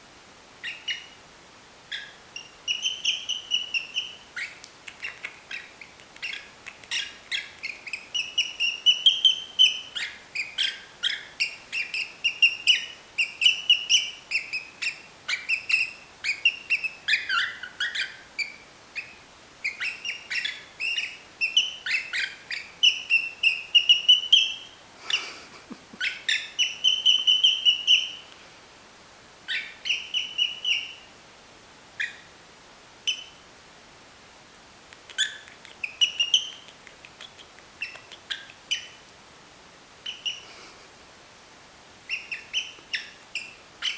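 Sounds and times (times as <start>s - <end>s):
cockatiel whistling: 1.9s - 24.6s.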